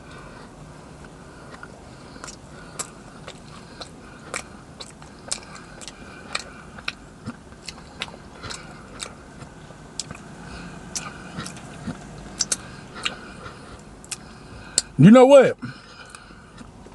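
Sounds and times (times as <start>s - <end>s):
person chewing food: 0.0s - 15.0s, 15.7s - 16.9s
wet mouth clicks: 10.0s - 10.2s, 10.9s - 13.2s.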